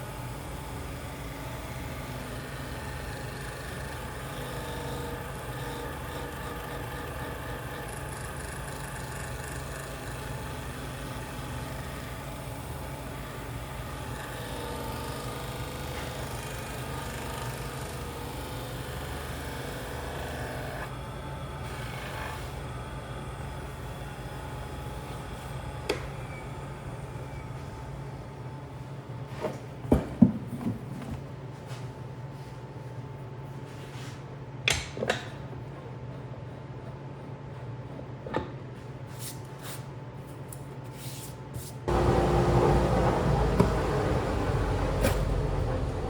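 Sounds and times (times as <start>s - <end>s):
electric motor humming: 41.9s - 46.0s.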